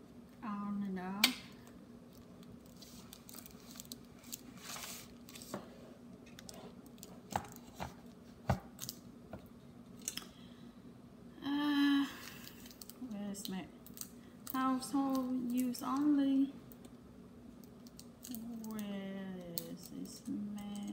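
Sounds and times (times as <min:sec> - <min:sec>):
faint steady hum: 0:00.0 - 0:20.9
packaging rustle: 0:02.1 - 0:05.6.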